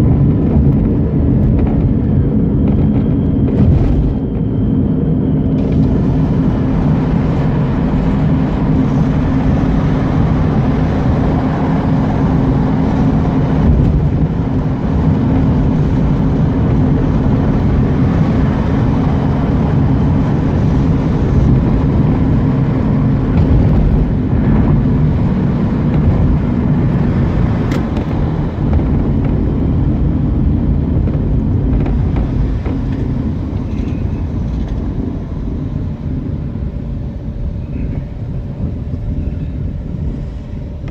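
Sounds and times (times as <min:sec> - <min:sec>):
rotary car engine running: 0:00.0 - 0:40.9.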